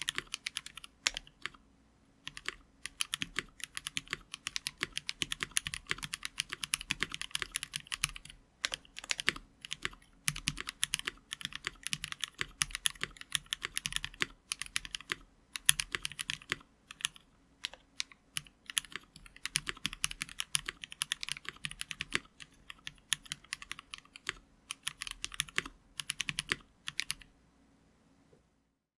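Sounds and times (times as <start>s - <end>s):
typing on mechanical keyboard: 0.0s - 1.6s, 2.3s - 27.3s.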